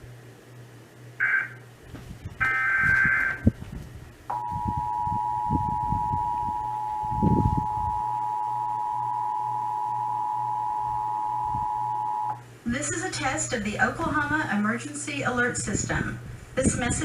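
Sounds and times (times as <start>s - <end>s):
two-tone attention signal: 4.3s - 12.4s.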